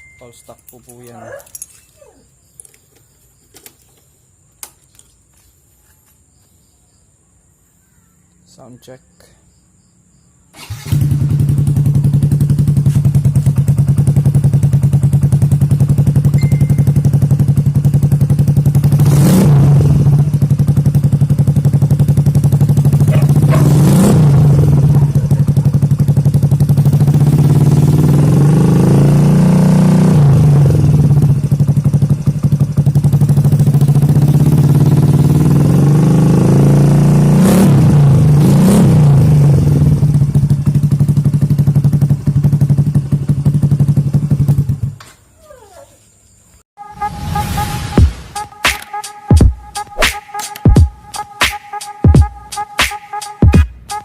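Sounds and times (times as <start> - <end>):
scooter engine idling: 10.6 - 19.0, 19.8 - 28.3, 30.3 - 36.4, 39.2 - 45.0
scooter throttle revs: 10.6 - 45.0.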